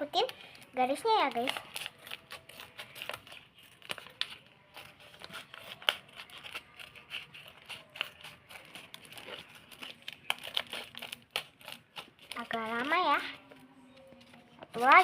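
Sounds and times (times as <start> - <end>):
scissors snipping paper: 1.2 - 13.2
paper rustling: 1.2 - 15.0.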